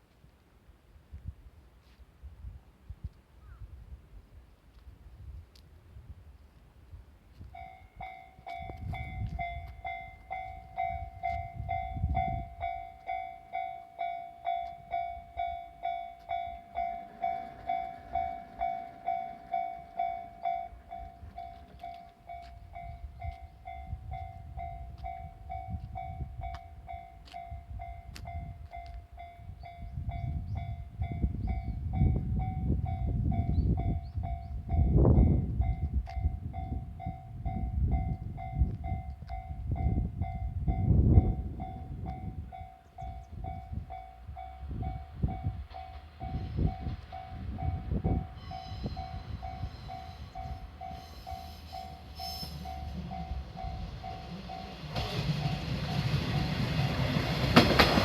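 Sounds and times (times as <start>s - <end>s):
diesel railcar rumbling past: 7.5s - 58.0s
level-crossing alarm dinging: 7.6s - 26.2s, 43.1s - 57.7s.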